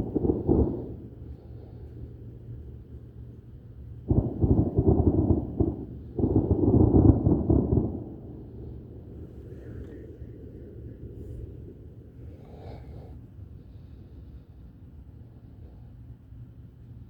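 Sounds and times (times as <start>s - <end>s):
low rumbling booms: 0.0s - 1.5s.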